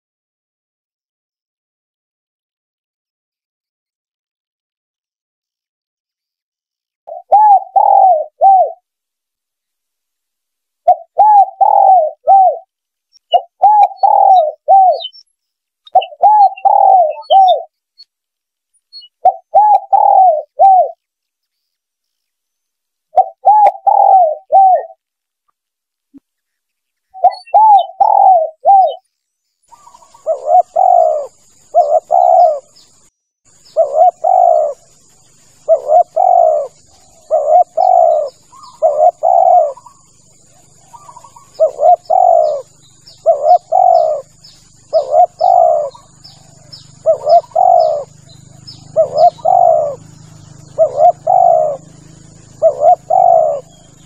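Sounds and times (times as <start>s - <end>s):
dove cooing: 7.1s - 8.8s, 10.8s - 12.7s, 13.3s - 15.2s, 15.9s - 17.7s, 19.0s - 21.0s, 23.1s - 25.0s, 27.1s - 29.0s, 29.7s - 33.0s, 33.6s - 54.0s
thin steady high whine: 11.1s - 54.0s.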